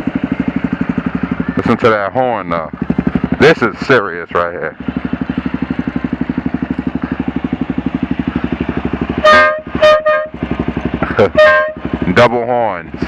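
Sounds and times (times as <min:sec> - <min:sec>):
motorcycle engine idling: 0:00.0 - 0:13.0
air horn blasts: 0:09.2 - 0:10.5, 0:11.2 - 0:11.9.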